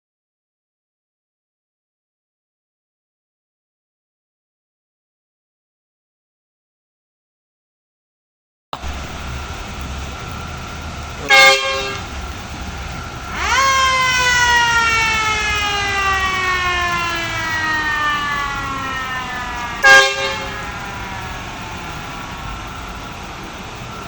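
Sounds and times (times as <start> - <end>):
fire truck horn blast: 8.8 - 10.4, 11.0 - 12.6, 13.2 - 22.0
fire truck siren: 8.8 - 24.0.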